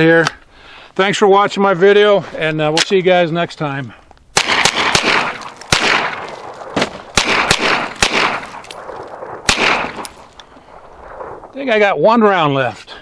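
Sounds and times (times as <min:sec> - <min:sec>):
gunshots with echo: 0:04.4 - 0:11.6.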